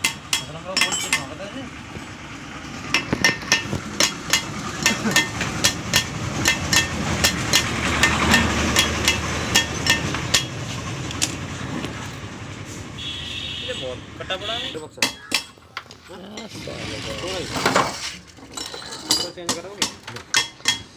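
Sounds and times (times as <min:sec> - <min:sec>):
hammer striking metal: 0:00.0 - 0:01.4, 0:02.9 - 0:10.6, 0:15.0 - 0:15.6, 0:19.1 - 0:20.9.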